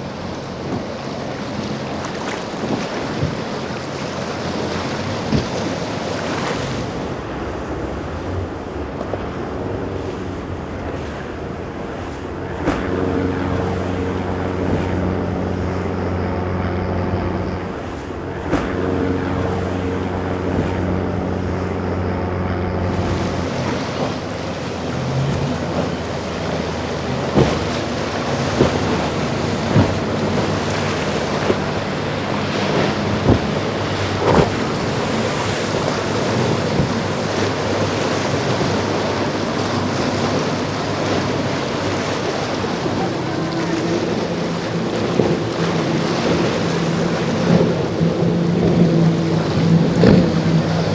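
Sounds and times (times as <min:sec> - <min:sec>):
boat engines droning: 0:00.0 - 0:50.9
surf: 0:00.0 - 0:50.9
wind rumbling on microphone: 0:00.0 - 0:50.9
sharp thumps: 0:27.0 - 0:37.0.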